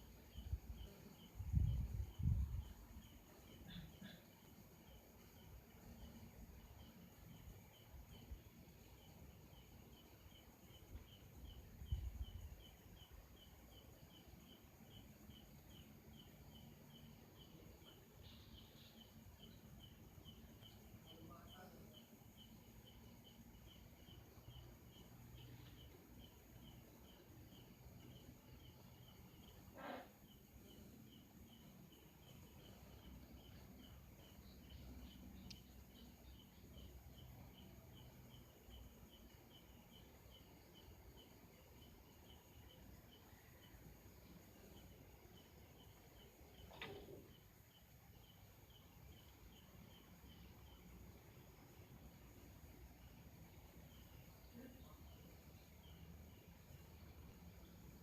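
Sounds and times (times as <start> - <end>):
faint high animal chirp: 29.6 - 30.2.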